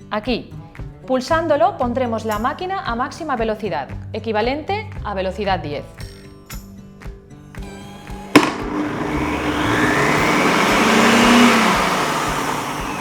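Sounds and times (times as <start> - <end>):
motor and blades whirring: 7.6 - 13.0.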